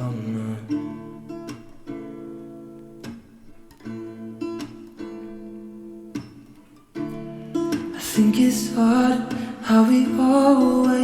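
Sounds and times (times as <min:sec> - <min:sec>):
person singing soft pop song: 0:00.0 - 0:01.0, 0:07.8 - 0:11.0
acoustic guitar chords: 0:00.0 - 0:11.0.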